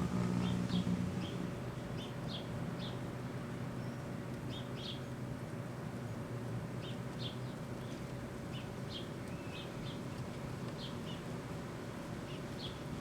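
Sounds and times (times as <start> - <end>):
microwave oven humming: 0.0 - 1.4.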